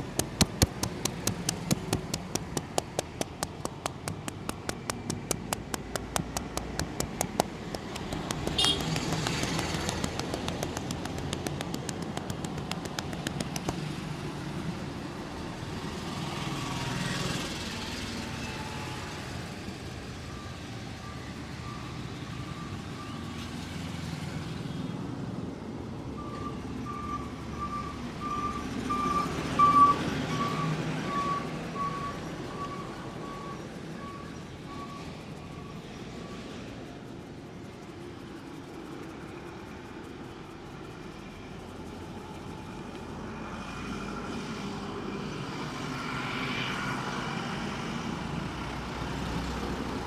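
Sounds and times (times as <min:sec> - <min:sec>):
vehicle engine rumbling: 0:00.0 - 0:29.5
passing traffic: 0:00.0 - 0:50.0
reversing alarm beeping: 0:26.2 - 0:35.8.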